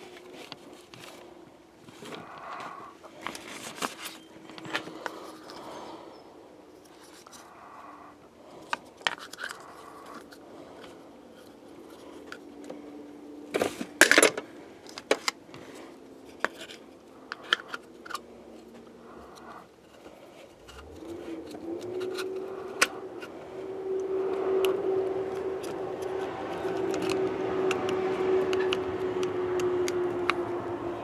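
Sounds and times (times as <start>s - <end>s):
steady drone: 1.2s - 31.0s
small parts and tools clicking: 2.0s - 12.9s, 16.2s - 23.4s, 24.0s - 30.5s
clatter: 13.5s - 15.4s.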